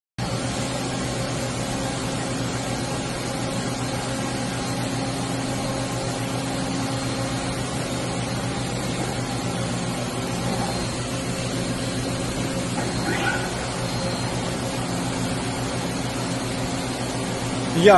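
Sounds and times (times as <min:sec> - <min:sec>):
machining centre humming: 0:00.2 - 0:17.9.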